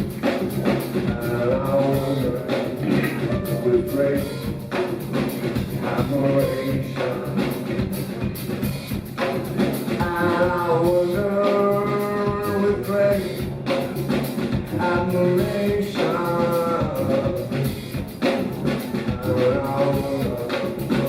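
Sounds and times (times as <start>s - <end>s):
drums and cymbals beat: 0.0s - 21.0s
live rock band playing: 0.0s - 21.0s
person singing: 0.1s - 8.2s, 9.9s - 13.9s, 14.7s - 17.8s, 18.9s - 21.0s.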